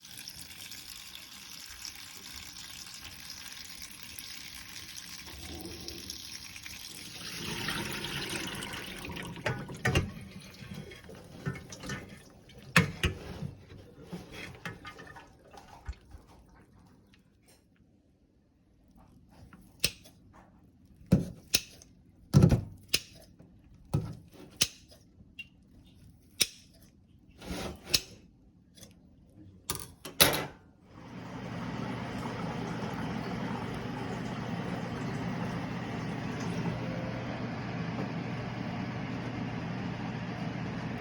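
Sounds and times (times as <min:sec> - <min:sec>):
utensils and containers clattering: 0:09.2 - 0:15.7
low motor hum: 0:31.0 - 0:41.0.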